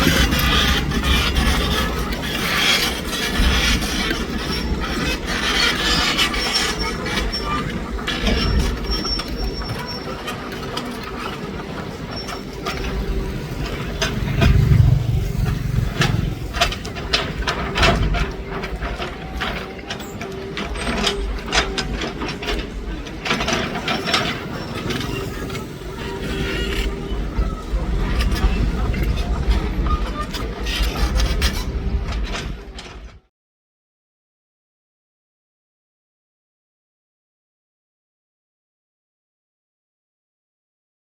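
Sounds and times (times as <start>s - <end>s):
excavator diesel engine hum: 0.0s - 33.0s.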